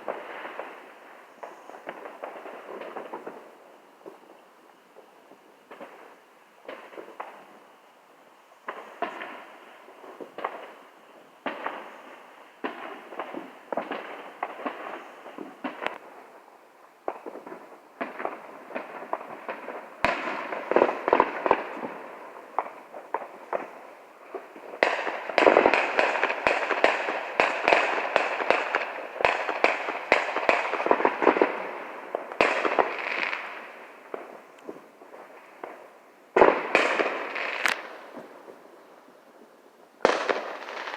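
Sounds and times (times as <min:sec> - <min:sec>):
fireworks popping and crackling: 0:00.0 - 0:07.7, 0:08.6 - 0:38.9, 0:40.0 - 0:40.9.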